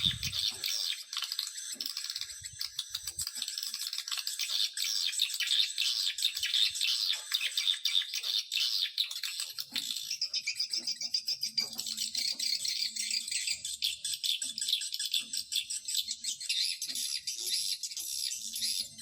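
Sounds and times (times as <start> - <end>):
swiftlets chirping: 0.0 - 4.7.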